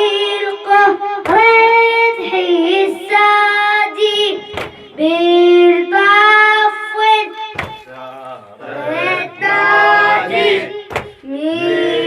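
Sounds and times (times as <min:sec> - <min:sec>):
sharp thump: 0:04.5 - 0:05.0, 0:07.5 - 0:07.9, 0:10.9 - 0:11.2
high solo voice chanting: 0:08.8 - 0:12.0.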